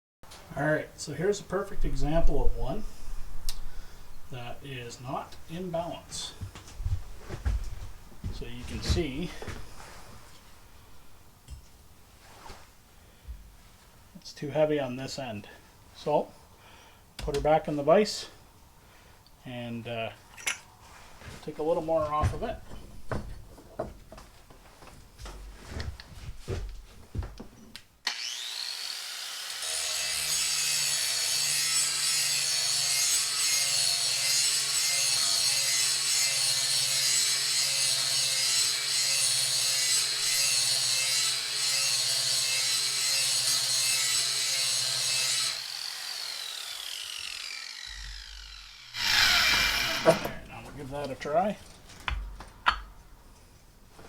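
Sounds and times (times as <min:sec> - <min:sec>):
electric grinder grinding steel: 0:28.1 - 0:50.5.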